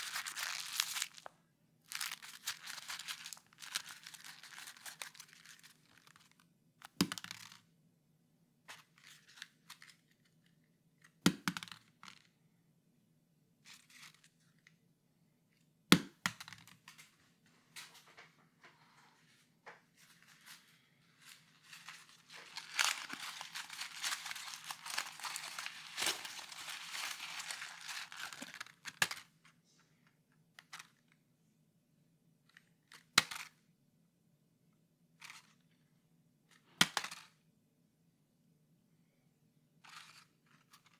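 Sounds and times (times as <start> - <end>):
paper crackling: 0.0 - 1.3, 1.9 - 6.1, 20.0 - 28.9
paper tearing and crinkling: 0.0 - 1.3, 1.9 - 5.6, 20.4 - 28.8.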